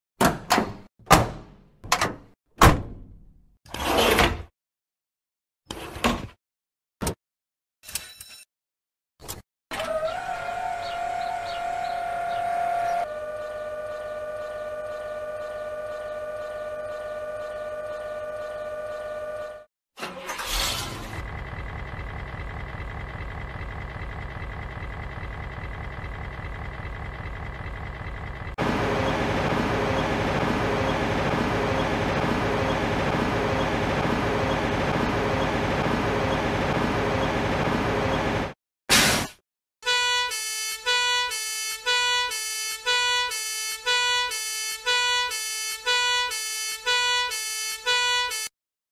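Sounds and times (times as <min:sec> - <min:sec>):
cartoon fire engine sounds: 0:09.7 - 0:19.7, 0:39.8 - 0:48.5
engine with high whine: 0:09.7 - 0:19.7, 0:20.4 - 0:38.6
rough loud engine: 0:09.8 - 0:19.7, 0:20.3 - 0:38.6.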